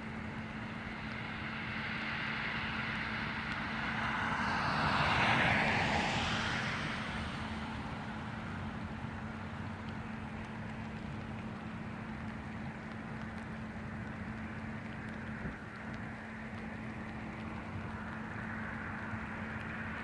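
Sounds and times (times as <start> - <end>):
vehicle passing by: 2.0 - 9.0.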